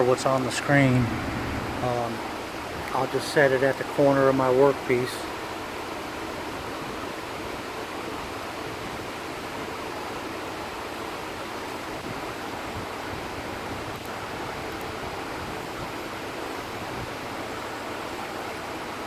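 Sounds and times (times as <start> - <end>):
steady rushing hiss: 0.0 - 8.7.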